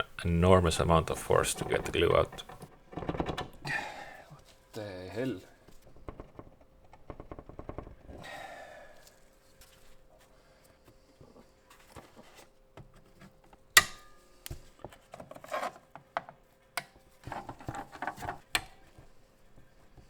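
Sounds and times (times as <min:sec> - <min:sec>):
handling clicks and taps: 0:00.0 - 0:03.6.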